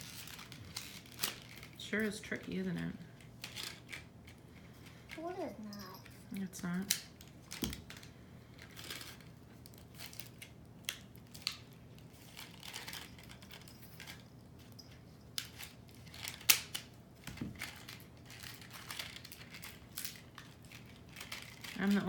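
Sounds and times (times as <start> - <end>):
packaging crinkling and rustling: 0.0 - 1.8, 7.1 - 22.0.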